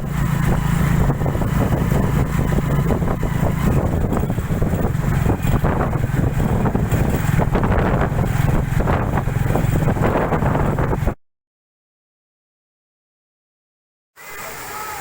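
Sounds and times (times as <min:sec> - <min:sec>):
wind buffeting microphone: 0:00.0 - 0:11.2.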